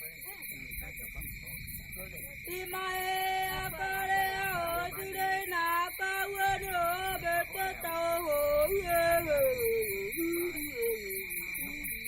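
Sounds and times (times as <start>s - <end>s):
person singing slow melody: 2.5s - 11.9s.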